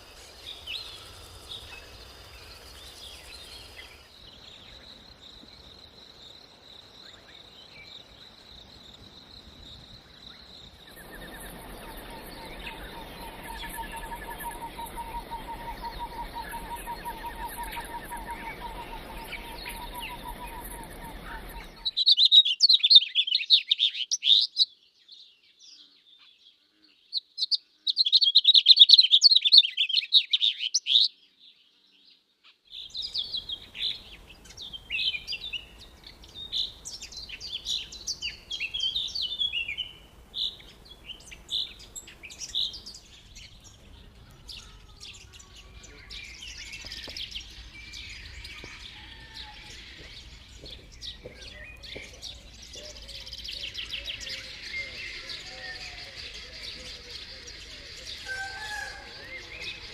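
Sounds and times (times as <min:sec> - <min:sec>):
birds chirping fast: 0:10.8 - 0:22.1
high bird trill: 0:10.9 - 0:22.9.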